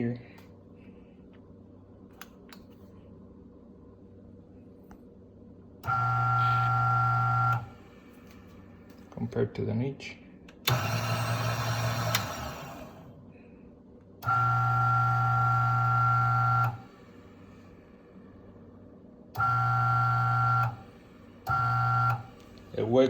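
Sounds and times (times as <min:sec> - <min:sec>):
coffee grinder motor whining: 0:05.9 - 0:07.8, 0:10.7 - 0:13.0, 0:14.2 - 0:16.9, 0:19.4 - 0:22.9.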